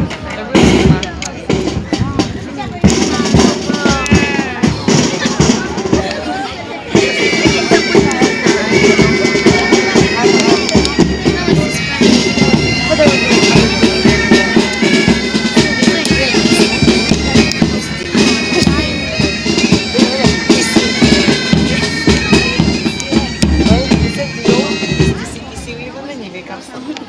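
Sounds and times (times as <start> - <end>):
drums beating time: 0.0 - 26.5
bagpipes playing a melody: 6.9 - 25.9.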